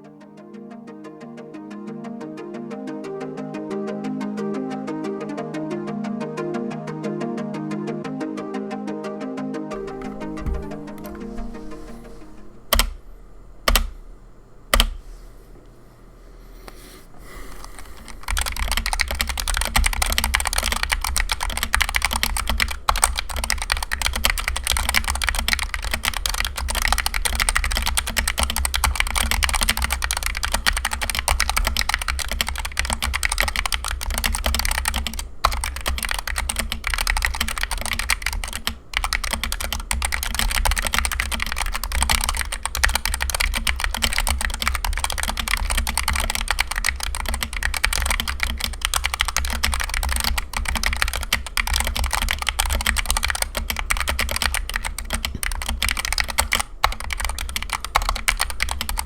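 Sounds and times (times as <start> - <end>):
fast keyboard typing: 9.8 - 13.0, 13.7 - 14.0, 14.7 - 15.0, 17.5 - 59.0.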